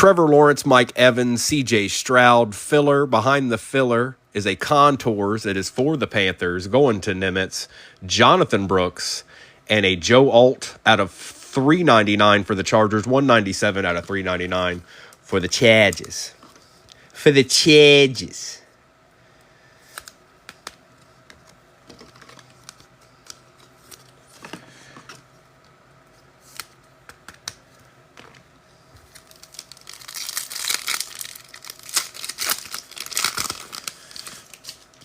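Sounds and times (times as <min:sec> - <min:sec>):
cards clicking and tapping: 0:26.5 - 0:27.6
foil pack crinkling and tearing: 0:28.9 - 0:35.0.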